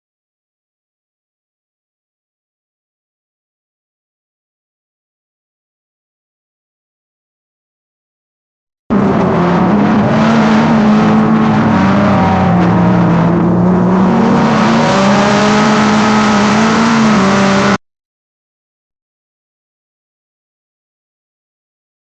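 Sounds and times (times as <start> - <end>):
drag racing car engine running: 8.9 - 17.8.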